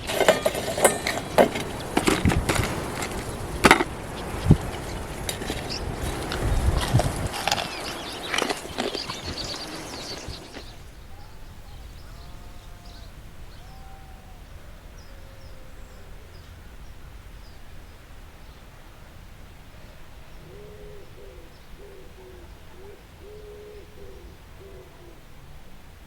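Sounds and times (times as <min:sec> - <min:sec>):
busy clattering and knocking: 0:00.0 - 0:10.7
low hooting bird calls: 0:00.0 - 0:25.8.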